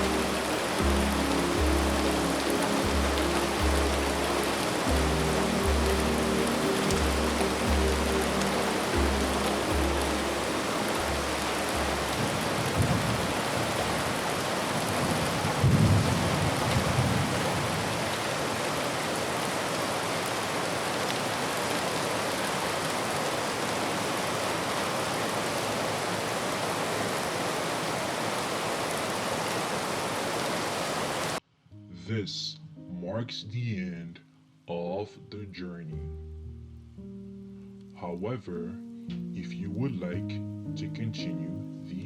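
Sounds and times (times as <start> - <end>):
low sustained music notes: 0.0 - 15.7, 31.6 - 42.0
steady rain falling: 0.0 - 31.5
thunder rumbles: 11.0 - 18.1.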